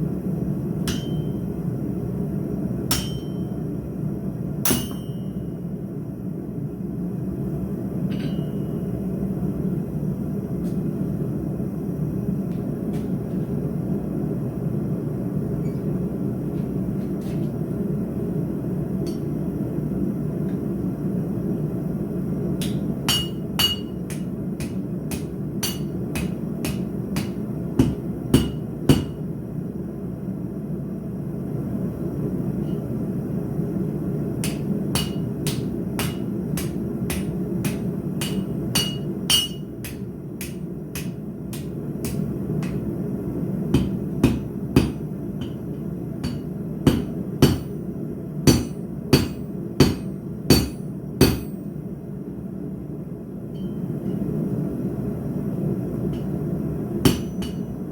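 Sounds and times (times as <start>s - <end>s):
hammer striking steel on anvil: 0.8s - 1.5s, 2.9s - 3.6s, 4.7s - 5.6s, 8.1s - 8.8s, 19.0s - 19.4s, 22.6s - 29.2s, 34.4s - 42.9s, 43.7s - 47.8s, 48.4s - 51.7s, 53.6s - 54.2s, 56.1s - 56.4s, 57.0s - 57.8s.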